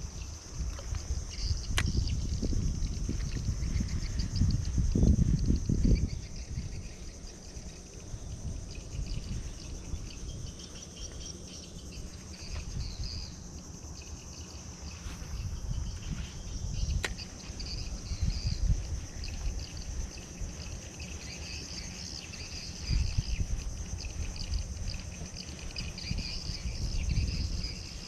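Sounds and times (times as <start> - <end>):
insects buzzing: 0.0 - 28.0
sharp click: 17.0 - 17.2.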